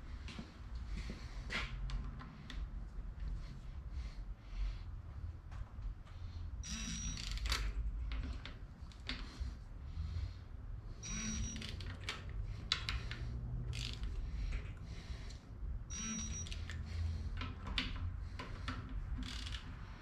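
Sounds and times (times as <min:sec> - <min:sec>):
wrench clicks and knocks: 0:11.5 - 0:14.6, 0:16.3 - 0:19.8.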